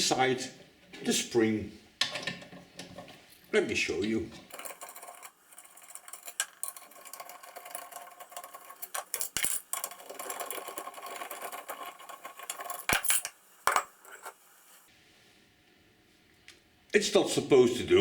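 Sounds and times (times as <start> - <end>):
metal parts clicking and rattling: 4.5 - 13.3.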